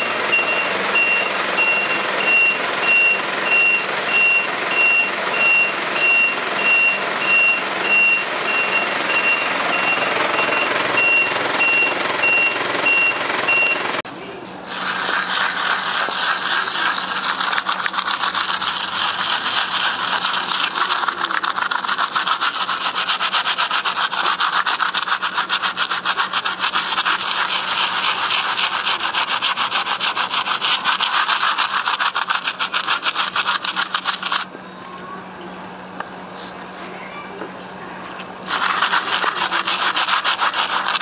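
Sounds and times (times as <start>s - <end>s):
abrasive scrubbing on metal: 14.5s - 34.5s, 38.4s - 41.0s.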